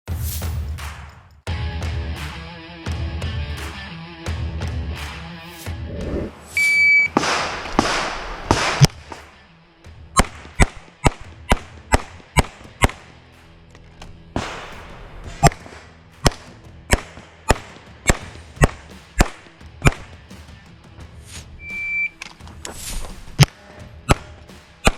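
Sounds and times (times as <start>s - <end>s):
pistol shots: 7.1s - 9.4s, 14.4s - 20.1s.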